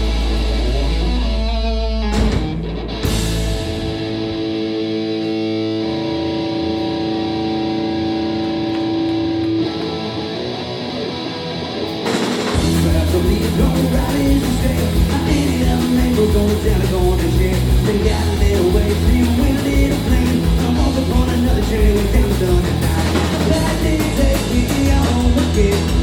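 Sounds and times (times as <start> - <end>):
drums crashing: 0.0 - 4.5, 11.9 - 26.0
electric guitar held notes: 0.0 - 12.9
loud punk rock band: 0.0 - 26.0.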